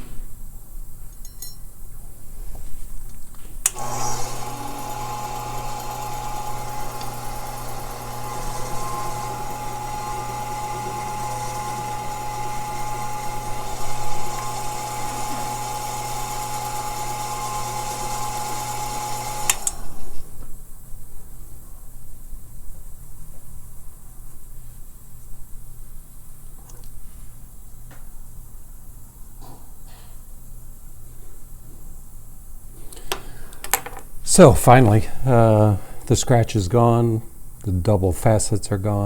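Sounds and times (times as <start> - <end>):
faceting machine whining: 3.7 - 20.2.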